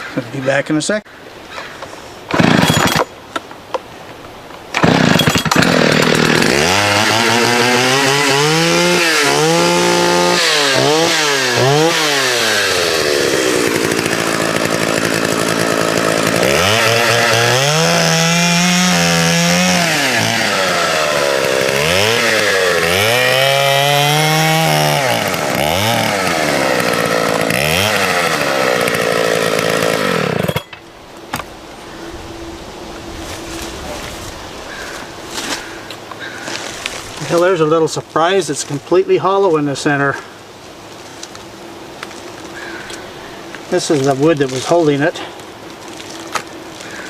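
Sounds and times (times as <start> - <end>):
chainsaw revving and cutting wood: 2.3 - 3.1, 4.8 - 30.8, 46.0 - 47.0.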